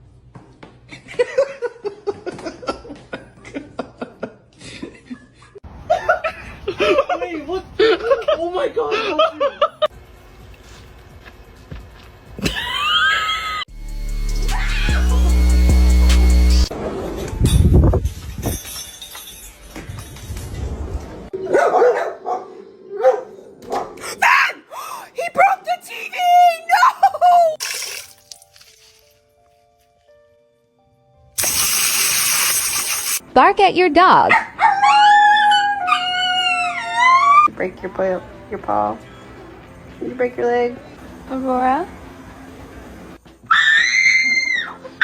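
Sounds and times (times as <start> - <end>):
dog barking: 21.4 - 24.1, 34.3 - 34.9.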